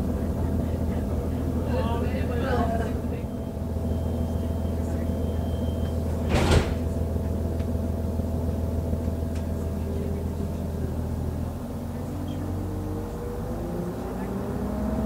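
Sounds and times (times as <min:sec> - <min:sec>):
diesel engine droning: 0:00.0 - 0:15.0.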